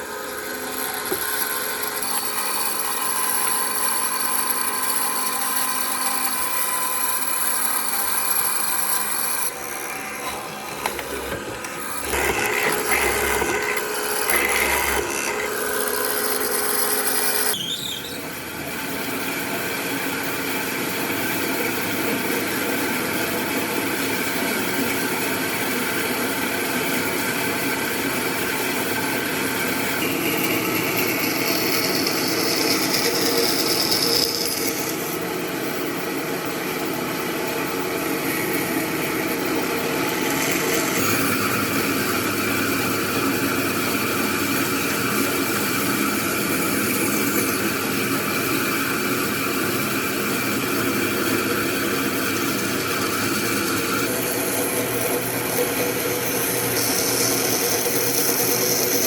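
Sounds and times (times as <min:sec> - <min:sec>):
power tool grinding wood: 0:00.1 - 0:17.6, 0:27.6 - 0:35.2, 0:38.2 - 0:59.0.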